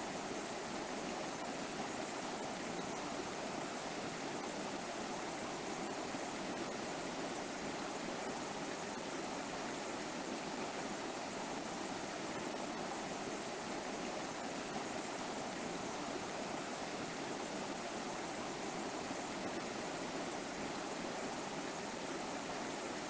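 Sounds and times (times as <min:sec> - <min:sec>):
river rushing over rocks: 0:00.0 - 0:23.0.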